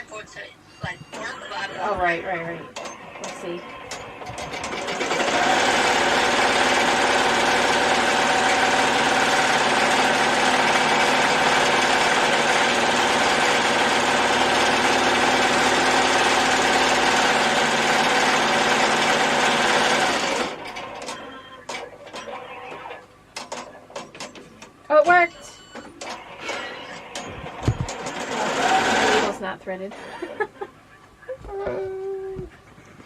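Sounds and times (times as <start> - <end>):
embroidery machine stitching: 2.8 - 23.0, 26.0 - 29.4.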